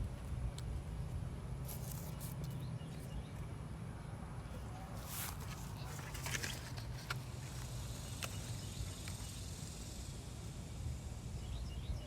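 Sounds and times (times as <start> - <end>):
high insect drone: 5.2 - 12.0.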